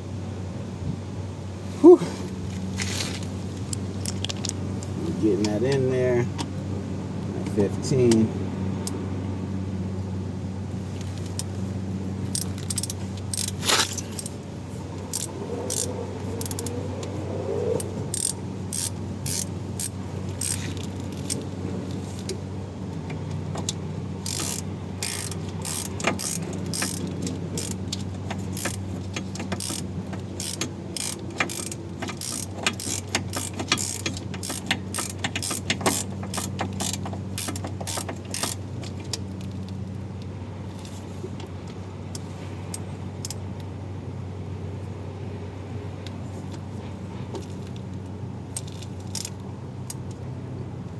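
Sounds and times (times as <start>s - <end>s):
low hum: 8.2s - 32.4s
ratchet wrench clicking: 12.3s - 14.4s, 15.0s - 16.8s, 17.8s - 22.3s, 23.6s - 39.7s, 42.7s - 43.4s, 48.5s - 50.1s.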